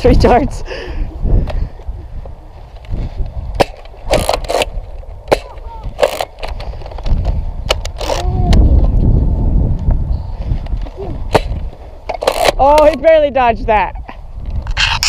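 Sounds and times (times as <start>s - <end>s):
wind rumble on microphone: 0.0s - 15.0s
toy blaster clicks: 7.7s - 8.6s.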